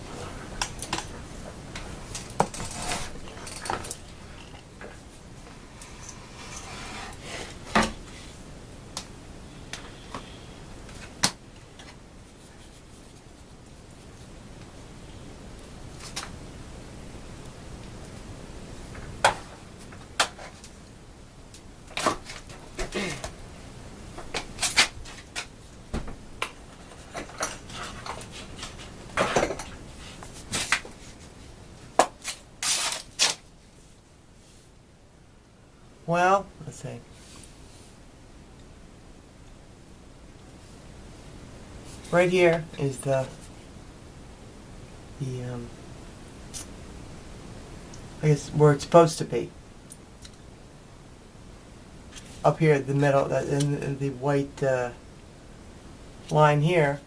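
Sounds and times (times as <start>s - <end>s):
rubbing and rustling: 0.0s - 8.4s, 9.8s - 14.3s, 26.5s - 34.8s
objects scraping: 2.3s - 4.7s, 5.8s - 8.4s
objects knocking and clattering: 27.0s - 29.8s.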